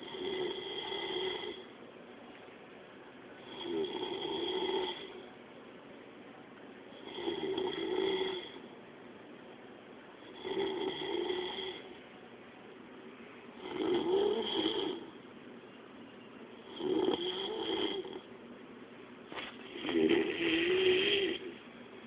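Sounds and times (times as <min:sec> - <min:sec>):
person snoring: 0:00.0 - 0:01.7, 0:03.4 - 0:05.2, 0:07.0 - 0:08.6, 0:10.3 - 0:11.9, 0:13.6 - 0:15.1, 0:16.7 - 0:18.2, 0:19.7 - 0:21.6.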